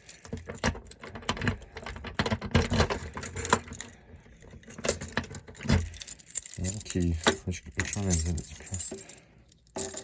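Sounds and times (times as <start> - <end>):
keys jangling: 2.7 - 10.0.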